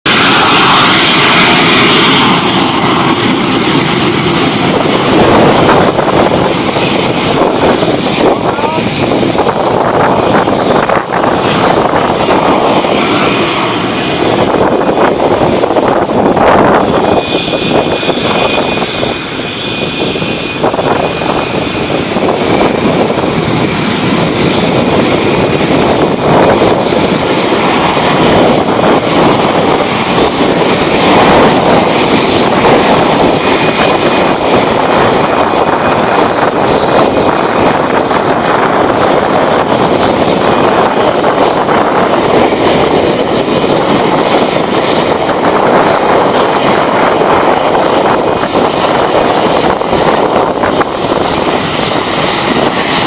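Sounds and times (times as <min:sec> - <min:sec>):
jet engines roaring: 0:00.0 - 0:53.0.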